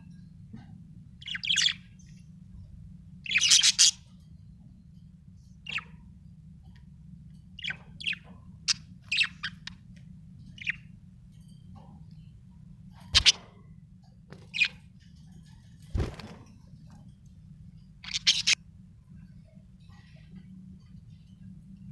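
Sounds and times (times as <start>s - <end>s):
steady low hum: 0.0s - 21.9s
budgerigar chirping: 1.2s - 1.9s, 3.2s - 4.1s, 5.7s - 5.9s, 7.6s - 9.7s, 10.6s - 10.8s, 13.2s - 13.4s, 18.0s - 18.6s.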